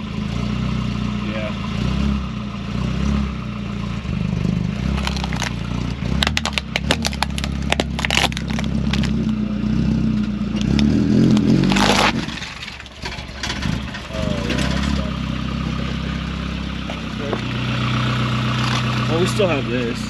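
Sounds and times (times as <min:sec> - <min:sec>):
loud scraping rush: 0:10.7 - 0:16.4.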